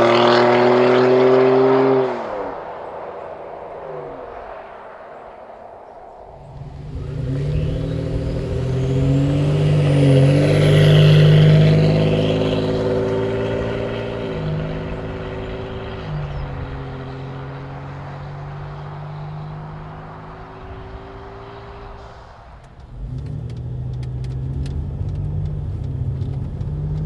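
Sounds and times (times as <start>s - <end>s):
truck engine pulling hard: 6.3s - 27.0s.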